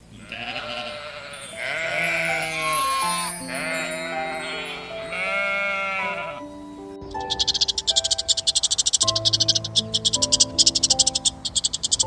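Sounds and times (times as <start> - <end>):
sheep or goat bleating: 0.1 - 6.4
background music: 0.2 - 12.0.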